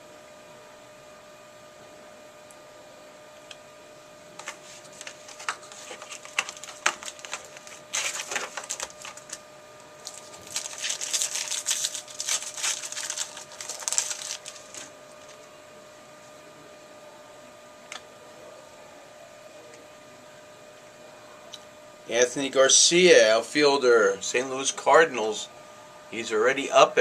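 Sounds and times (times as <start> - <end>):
cards clicking: 4.4 - 9.4
packaging crinkling: 4.4 - 15.5.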